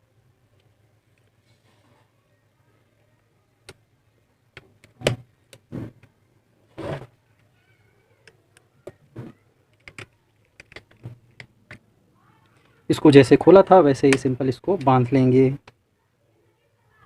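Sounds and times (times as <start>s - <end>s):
plastic clicks and knocks: 8.2s - 11.8s.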